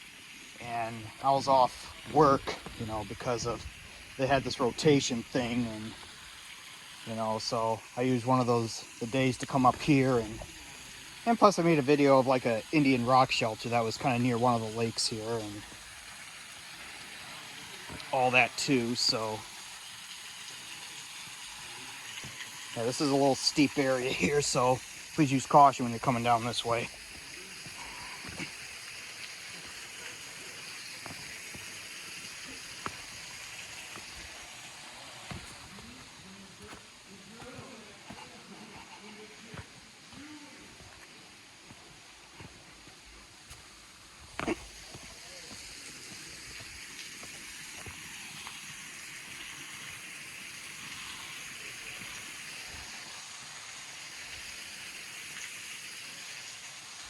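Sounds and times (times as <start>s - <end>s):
water rushing in creek and waterfall: 0.0s - 57.0s.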